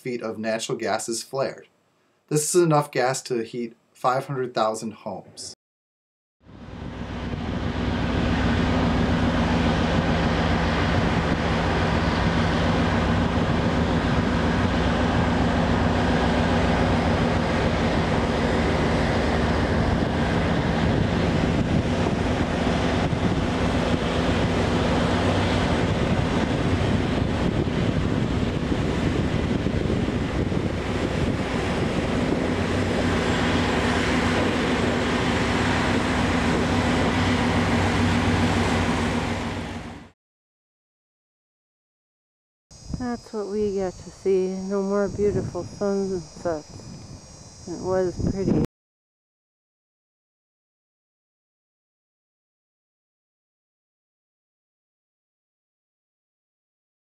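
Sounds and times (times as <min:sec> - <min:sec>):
heavy machinery engine drone: 0:06.4 - 0:40.1, 0:42.8 - 0:48.7.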